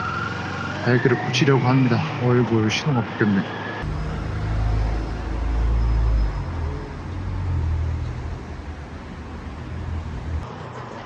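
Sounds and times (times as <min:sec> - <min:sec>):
motorcycle engine rumble: 0:03.8 - 0:10.4
road noise: 0:03.8 - 0:10.5.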